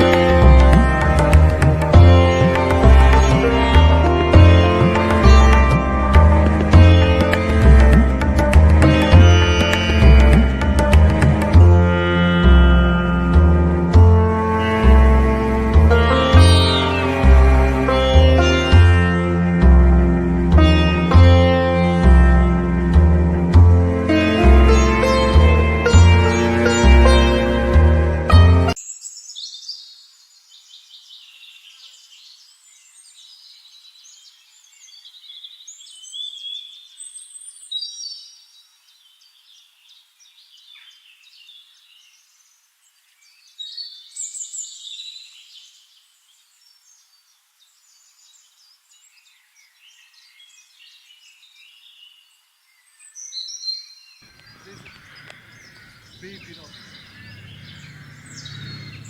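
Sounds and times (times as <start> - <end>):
small birds chirping: 28.7 - 59.0.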